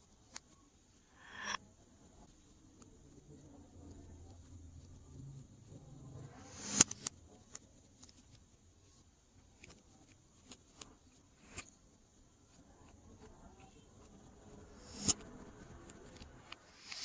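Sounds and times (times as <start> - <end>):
hiss into sharp loud pop: 6.5 - 7.0, 14.8 - 15.2, 16.8 - 17.0.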